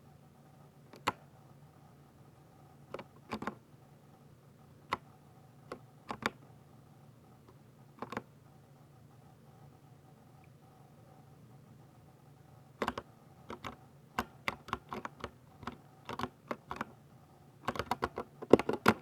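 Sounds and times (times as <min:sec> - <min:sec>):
mechanical keyboard keystrokes: 0:01.0 - 0:01.2, 0:02.9 - 0:03.6, 0:05.7 - 0:06.4, 0:08.0 - 0:08.3, 0:12.8 - 0:17.0, 0:17.6 - 0:19.0.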